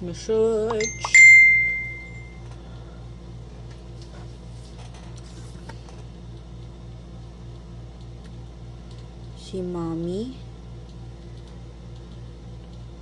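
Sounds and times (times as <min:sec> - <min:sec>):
low throbbing machine hum: 0:00.0 - 0:04.7.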